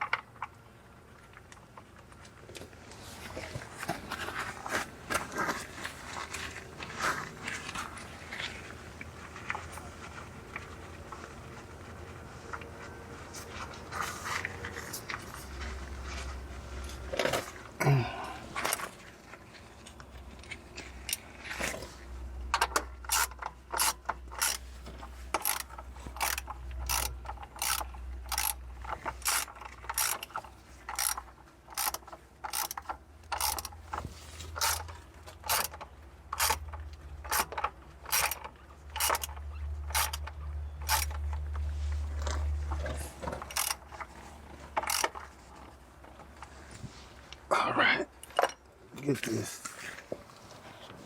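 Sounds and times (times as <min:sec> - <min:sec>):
ratchet wrench clicking: 0:22.6 - 0:24.6, 0:25.4 - 0:28.6, 0:29.2 - 0:33.8, 0:34.6 - 0:34.8, 0:35.4 - 0:36.6, 0:37.2 - 0:41.2, 0:43.4 - 0:43.8, 0:44.8 - 0:45.2.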